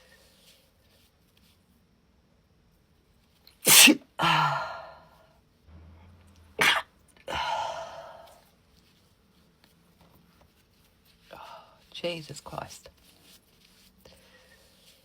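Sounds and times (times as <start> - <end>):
woman sneezing: 3.7 - 4.9, 6.6 - 8.2.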